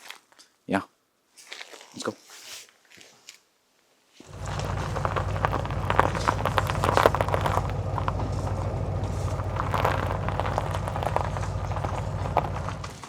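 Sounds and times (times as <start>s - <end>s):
engine and tyre drone: 4.3s - 13.0s
small clicks and rattles: 4.3s - 13.0s.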